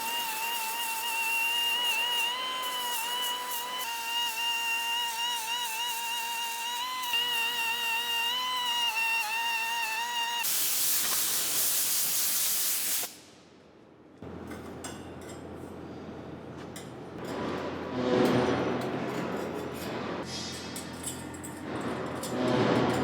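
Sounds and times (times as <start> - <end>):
compressed air hissing: 0.0 - 13.4
workshop noise: 0.0 - 23.0.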